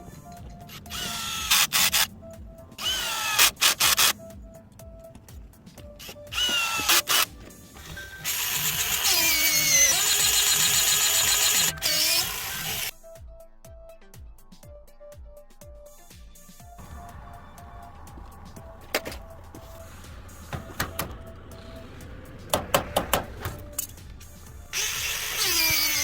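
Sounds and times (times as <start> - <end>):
background music: 0.0 - 26.0
power drill motor: 0.7 - 2.1, 2.8 - 4.2, 6.0 - 12.9, 19.0 - 26.0.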